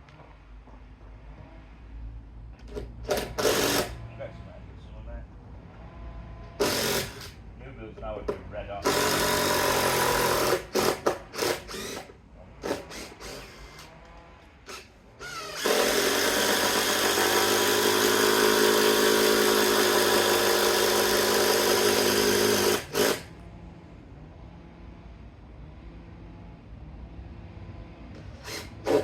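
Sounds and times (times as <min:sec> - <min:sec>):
power tool running: 0:02.8 - 0:04.0, 0:06.4 - 0:07.4, 0:08.8 - 0:23.5, 0:28.2 - 0:29.0.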